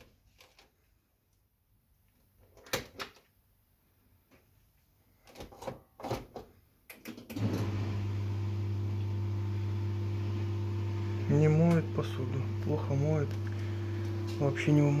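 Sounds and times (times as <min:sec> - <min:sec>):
dishwasher humming: 0:07.4 - 0:15.0.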